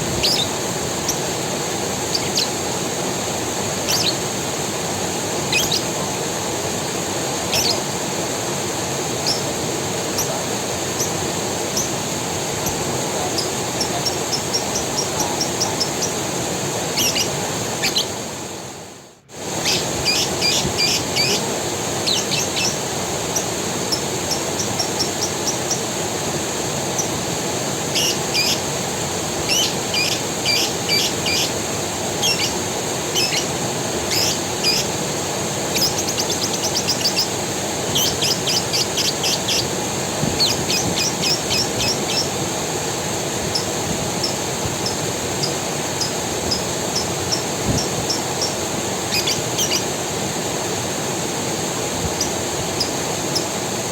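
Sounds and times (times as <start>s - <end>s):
small birds chirping: 0.0s - 1.3s, 2.0s - 2.7s, 3.8s - 4.3s, 5.4s - 6.3s, 7.4s - 7.9s, 9.2s - 12.0s, 12.6s - 18.2s, 19.6s - 26.0s, 27.9s - 28.7s, 29.3s - 35.0s, 35.6s - 42.4s, 43.4s - 50.0s, 52.0s - 53.6s
creek running: 0.0s - 53.9s.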